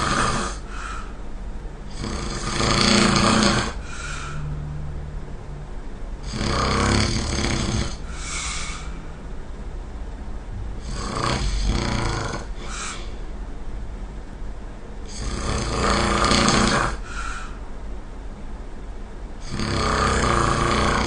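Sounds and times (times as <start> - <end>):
person snoring: 0.0 - 1.1, 1.9 - 4.5, 6.2 - 9.0, 10.8 - 13.2, 15.1 - 17.6, 19.4 - 21.0.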